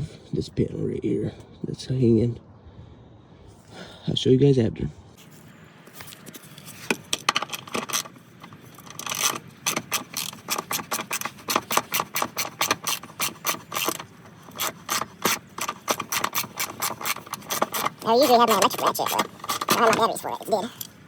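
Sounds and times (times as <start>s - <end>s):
socket ratchet clicking: 7.2s - 20.1s.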